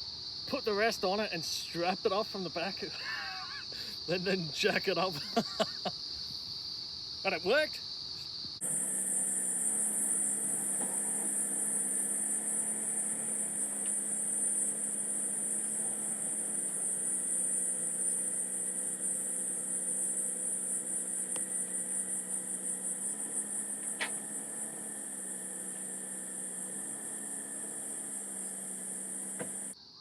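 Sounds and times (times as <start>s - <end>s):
insects chirring: 0.0s - 30.0s
low hum: 8.6s - 29.8s.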